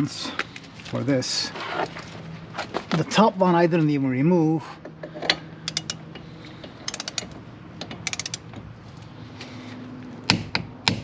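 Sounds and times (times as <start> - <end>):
torque wrench ratcheting clicks: 5.7 - 6.0, 6.9 - 7.4, 8.0 - 8.5
torque wrench sharp click: 5.7 - 6.0, 6.9 - 7.4, 8.1 - 8.5.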